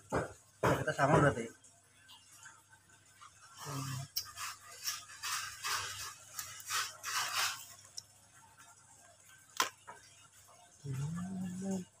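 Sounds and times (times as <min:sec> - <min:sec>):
tools scraping and rattling: 0:04.2 - 0:08.0.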